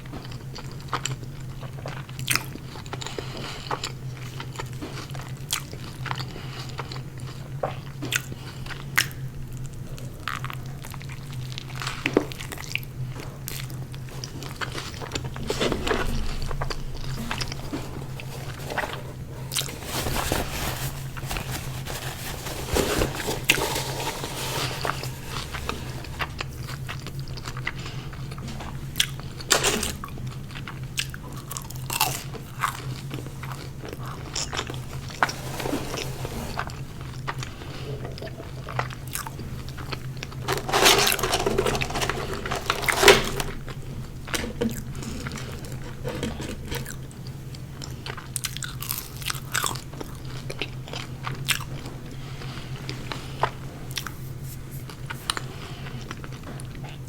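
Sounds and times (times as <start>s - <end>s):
person chewing crunchy food: 10.0s - 35.4s, 36.5s - 51.8s.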